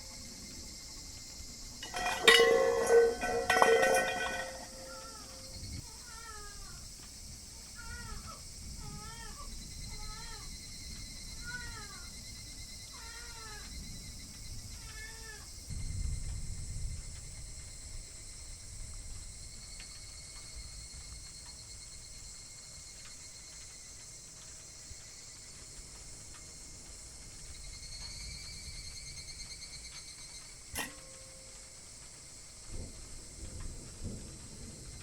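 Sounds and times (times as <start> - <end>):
high insect trill: 0.0 - 35.0.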